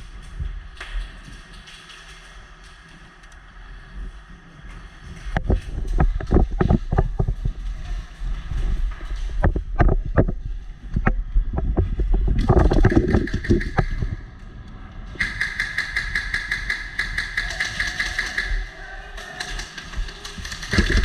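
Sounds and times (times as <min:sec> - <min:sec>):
airsoft guns firing: 0:15.2 - 0:21.0.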